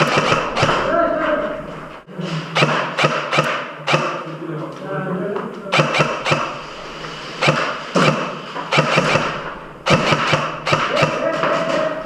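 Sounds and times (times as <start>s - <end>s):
pellet impacts: 0.0s - 1.3s, 7.4s - 12.0s
airsoft guns firing: 0.0s - 1.4s, 2.5s - 4.3s, 5.7s - 12.0s.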